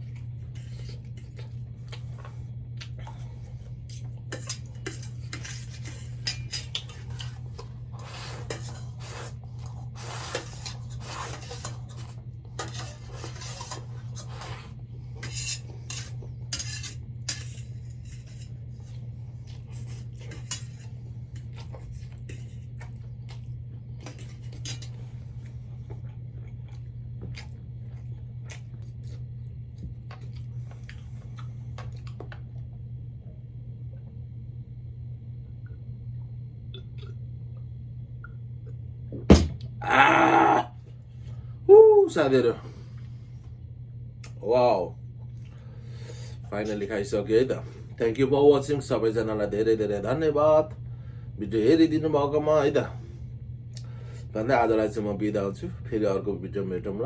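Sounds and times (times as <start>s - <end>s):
low hum: 17.6s - 48.2s.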